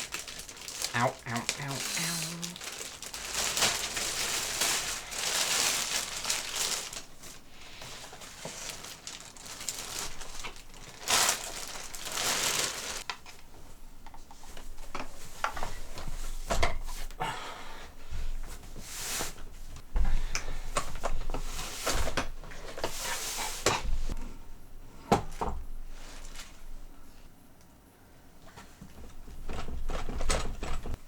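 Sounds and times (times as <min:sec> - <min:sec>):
plastic packaging crinkling: 0:00.0 - 0:13.1.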